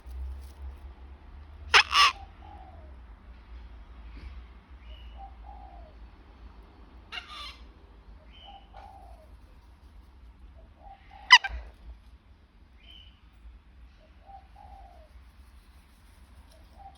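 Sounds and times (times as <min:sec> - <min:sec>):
cockatoo screeching: 0:01.7 - 0:02.2, 0:11.2 - 0:11.7.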